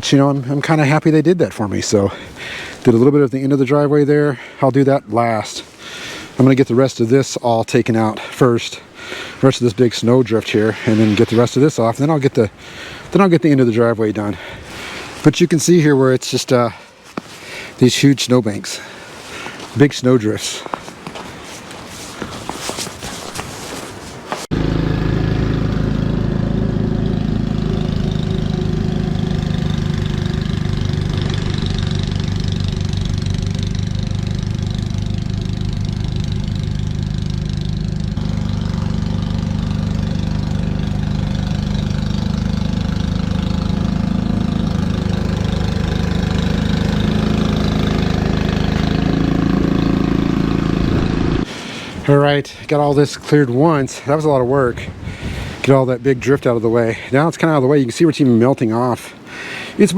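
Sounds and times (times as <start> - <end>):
snow blower engine running: 24.5 - 51.5.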